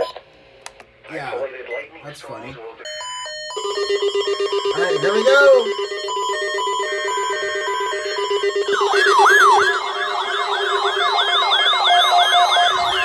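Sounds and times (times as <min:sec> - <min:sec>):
electronic siren sweeps: 0:02.9 - 0:13.0
higher electronic siren: 0:02.9 - 0:13.0.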